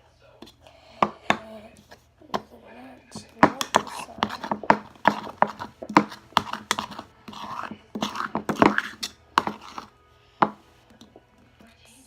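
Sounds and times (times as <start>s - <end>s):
spoon stirring sticky slime: 0.0s - 11.8s
spoon knocking bowl: 3.2s - 11.2s.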